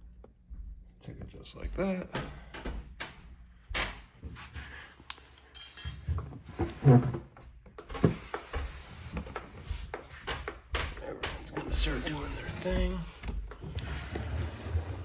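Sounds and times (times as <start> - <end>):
glass clinks: 5.5 - 6.1.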